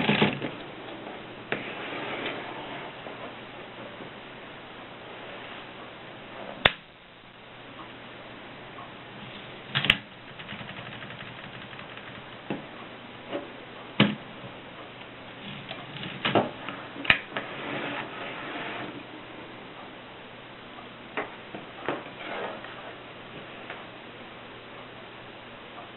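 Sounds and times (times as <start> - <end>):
typewriter clacks: 0.0 - 0.5, 9.7 - 12.5.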